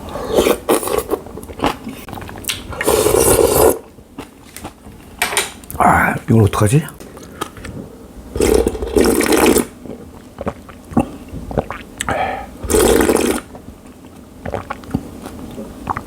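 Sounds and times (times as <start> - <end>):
loud soup slurps: 2.8 - 3.8, 8.4 - 9.8, 12.6 - 13.5.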